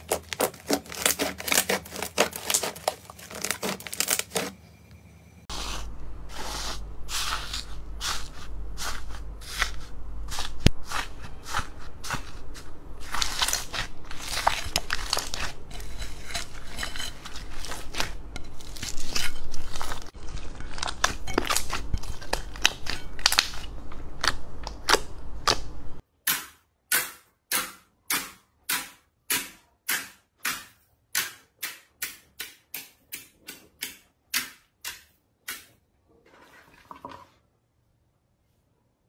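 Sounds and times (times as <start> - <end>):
slime crackling: 6.3 - 25.7.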